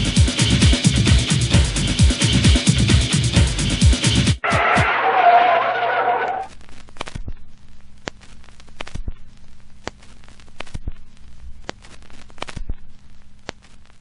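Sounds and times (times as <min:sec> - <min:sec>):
crackling clicks: 0:06.3 - 0:07.2, 0:07.8 - 0:14.0.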